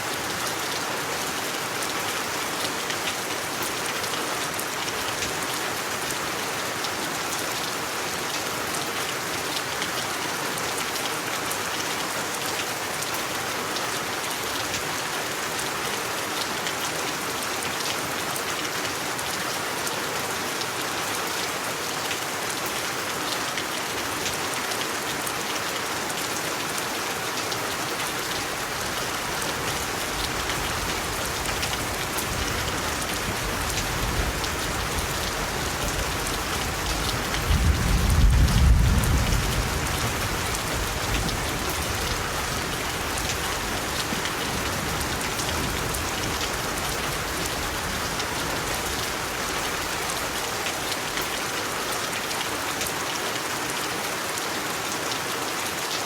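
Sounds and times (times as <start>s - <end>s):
steady rain hiss: 0.0s - 56.0s
low rumble of thunder: 32.3s - 42.2s.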